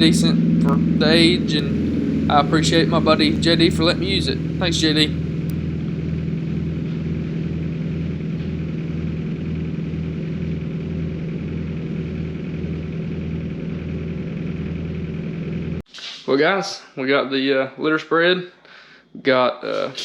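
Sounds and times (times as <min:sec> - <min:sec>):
truck engine throbbing drone: 0:00.0 - 0:15.8.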